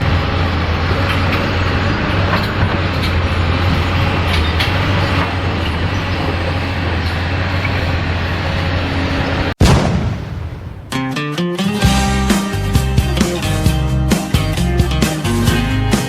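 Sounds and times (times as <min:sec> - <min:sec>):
excavator diesel engine droning: 0:00.0 - 0:09.6.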